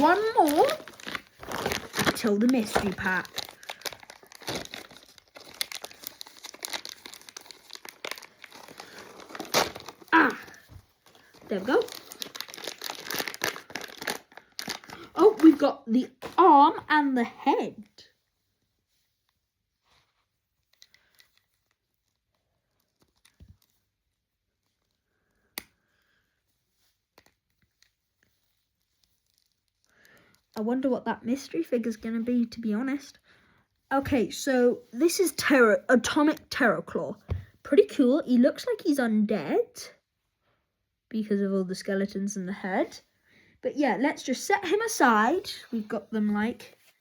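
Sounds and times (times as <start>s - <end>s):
plastic wrapper crinkling and tearing: 0.0s - 16.0s, 19.9s - 30.8s
faint rustling of packaging: 0.0s - 37.7s, 42.7s - 47.0s.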